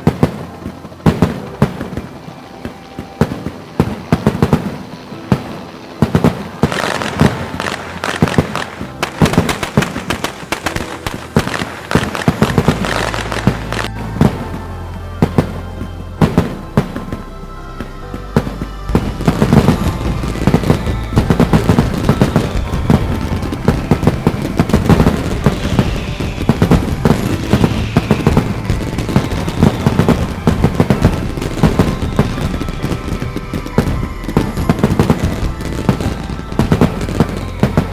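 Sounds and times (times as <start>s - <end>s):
fireworks bangs and crackles: 0.0s - 37.9s
music playing: 0.0s - 37.9s.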